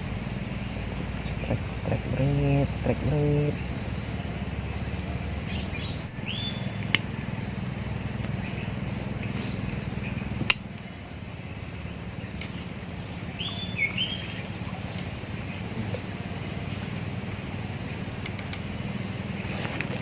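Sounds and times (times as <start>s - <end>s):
bird chirps: 0.0s - 20.0s
steady low hum: 0.0s - 20.0s
sharp clicks: 6.7s - 7.3s, 18.2s - 18.7s.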